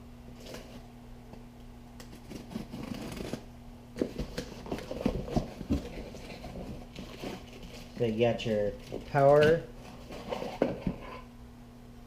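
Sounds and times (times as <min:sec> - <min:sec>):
faint steady hum: 0:00.0 - 0:12.0
cardboard box being cut: 0:02.2 - 0:03.4
packaging rustling: 0:04.0 - 0:11.0.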